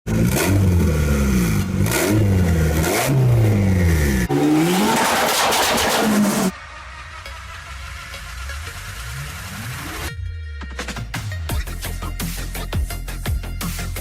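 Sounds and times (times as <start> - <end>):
car engine revving: 0.1 - 10.1.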